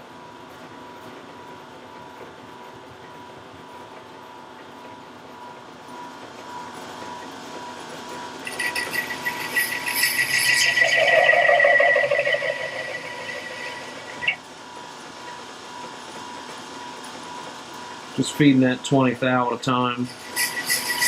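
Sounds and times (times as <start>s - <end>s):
lathe cutting ringing whine: 6.6s - 21.0s
lathe humming: 8.4s - 14.4s, 20.0s - 21.0s.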